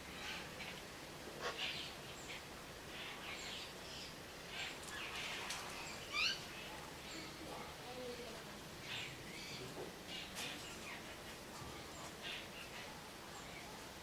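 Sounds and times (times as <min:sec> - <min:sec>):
steady background hiss: 0:00.0 - 0:14.0
birds chirping and calling: 0:01.4 - 0:07.5.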